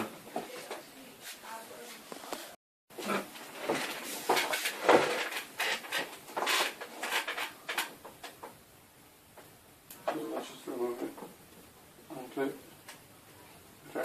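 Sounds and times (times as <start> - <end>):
clicks and scrapes of plastic parts: 3.5 - 8.6.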